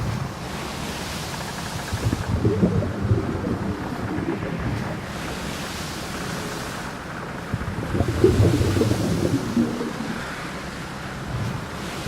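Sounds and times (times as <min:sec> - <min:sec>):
low rumbling and crackling: 0:00.0 - 0:12.0
surf: 0:00.0 - 0:12.0
wind noise: 0:01.8 - 0:05.5, 0:07.5 - 0:10.5.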